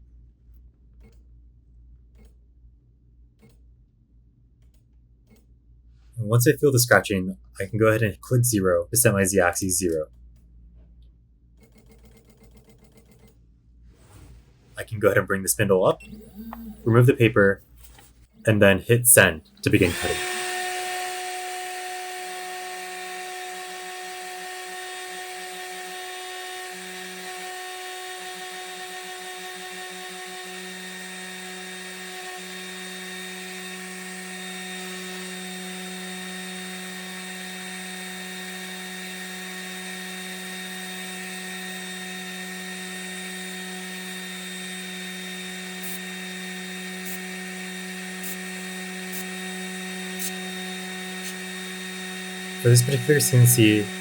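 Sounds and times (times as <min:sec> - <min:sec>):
mill spindle high whine: 0:14.8 - 0:54.0.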